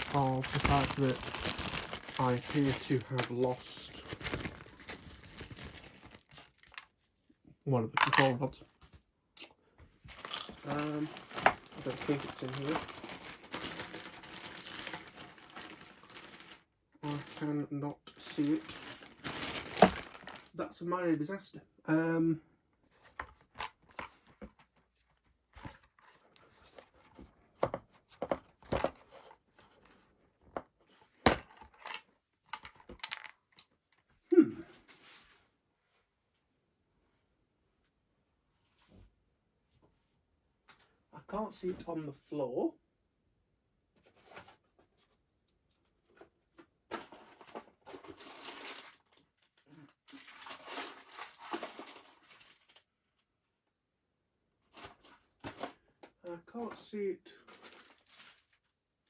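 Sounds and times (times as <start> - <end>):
hands rummaging through plastic parts: 0.0 - 7.0, 7.9 - 8.5, 10.1 - 20.6, 46.9 - 52.8, 57.4 - 58.7.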